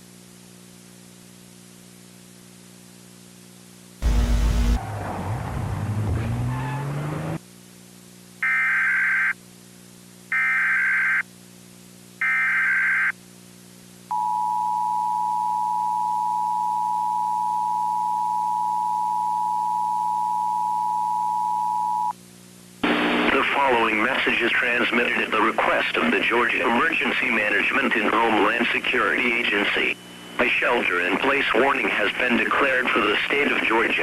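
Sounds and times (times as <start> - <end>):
low hum: 2.9 - 7.4.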